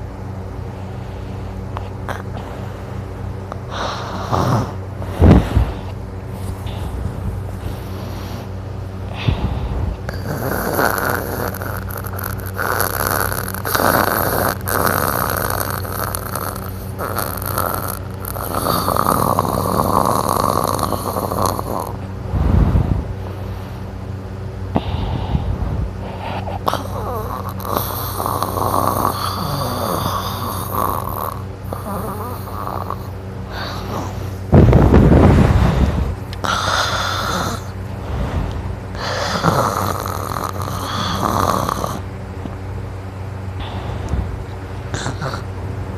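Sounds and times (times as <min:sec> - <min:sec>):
long noisy breath: 0:00.6 - 0:42.1, 0:43.5 - 0:45.4
man snoring: 0:03.7 - 0:05.9, 0:09.2 - 0:22.0, 0:26.4 - 0:42.1, 0:44.9 - 0:45.5.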